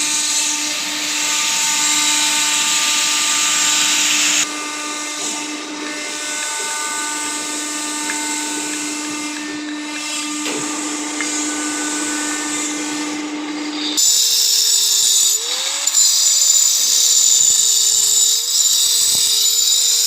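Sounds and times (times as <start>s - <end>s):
router spindle whining: 0.0s - 20.0s.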